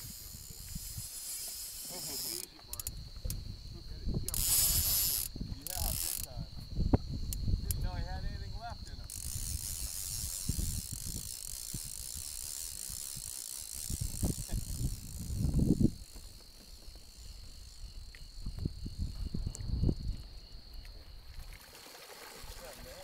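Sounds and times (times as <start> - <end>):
wind rumble on microphone: 0.0 - 1.1, 2.9 - 21.5
fly reel drag clicking: 0.0 - 3.4, 4.2 - 6.4, 8.8 - 18.3.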